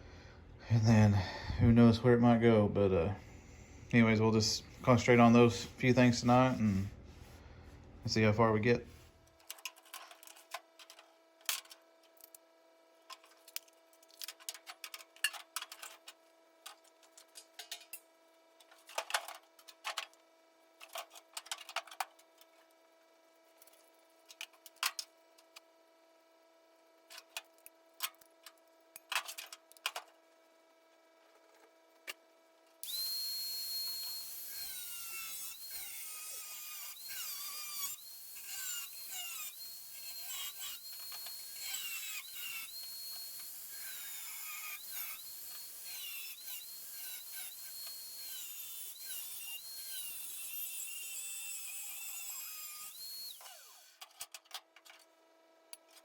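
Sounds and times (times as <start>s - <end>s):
rotary tool whining on metal: 32.8s - 55.0s.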